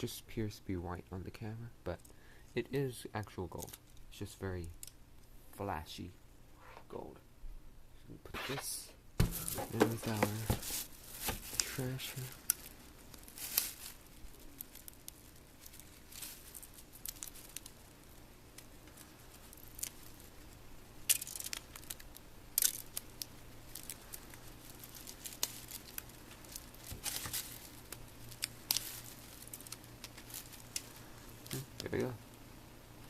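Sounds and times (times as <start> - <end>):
thin plastic crinkling scrapes: 9.3 - 20.6, 21.2 - 31.8.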